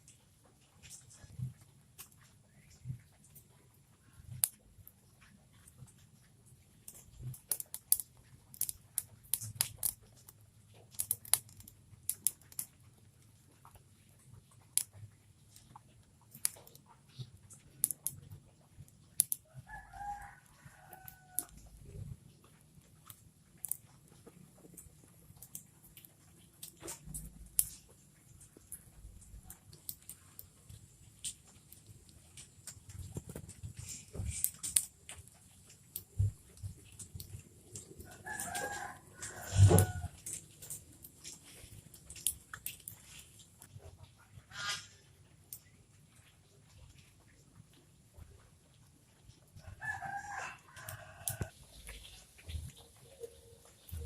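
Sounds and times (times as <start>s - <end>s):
sharp ticks and taps: 19.2s - 19.4s
rooster crowing: 19.6s - 21.6s, 38.0s - 40.2s, 49.6s - 51.5s.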